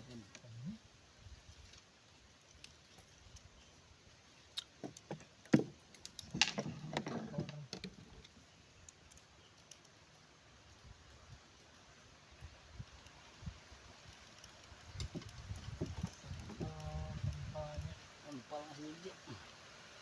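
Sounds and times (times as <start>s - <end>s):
rustling and clattering: 4.7s - 8.5s, 13.9s - 18.0s
sharp clicks and knocks: 14.4s - 17.4s.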